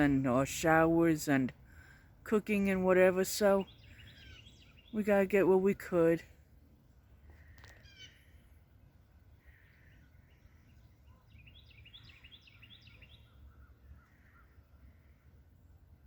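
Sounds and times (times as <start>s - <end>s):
bird chirping: 3.3s - 5.5s, 7.4s - 8.6s, 9.4s - 15.8s.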